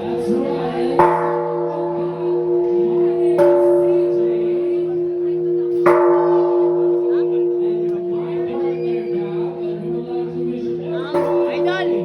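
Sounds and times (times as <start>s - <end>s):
large bell ringing: 0.0s - 12.0s.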